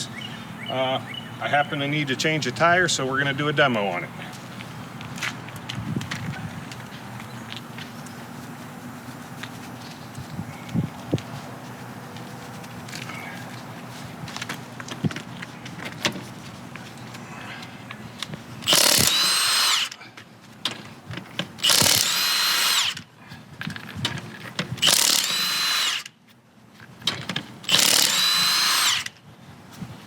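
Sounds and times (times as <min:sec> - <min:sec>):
impact wrench running: 0:18.6 - 0:20.0, 0:21.6 - 0:23.0, 0:24.8 - 0:26.1, 0:27.6 - 0:29.2.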